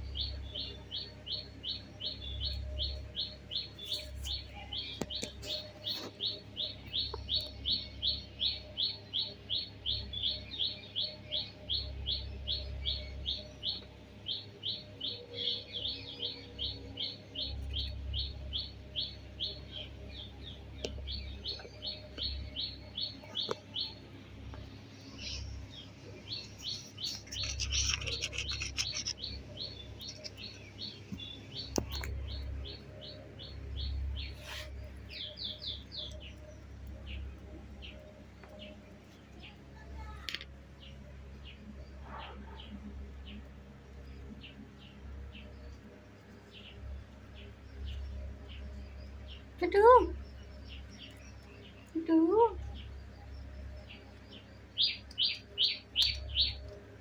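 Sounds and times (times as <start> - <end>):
parrot chirping: 26.4 - 30.6.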